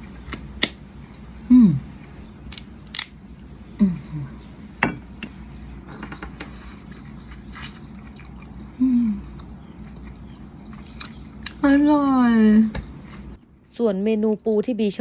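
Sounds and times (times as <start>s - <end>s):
person humming: 1.5s - 2.0s, 3.8s - 4.4s, 8.8s - 9.3s.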